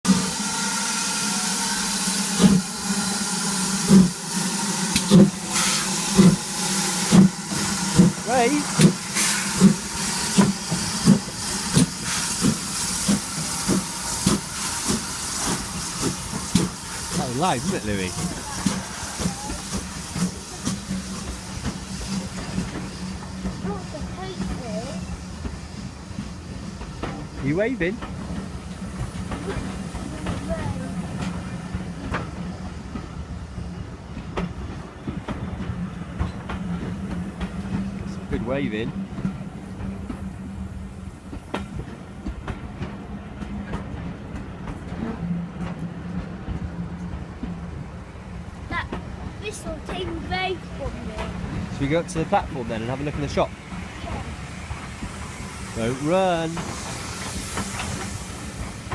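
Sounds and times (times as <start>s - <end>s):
steam locomotive chuffing: 0.0s - 58.9s
train rumble: 0.0s - 58.9s
steam hissing: 0.1s - 33.9s, 47.7s - 58.9s.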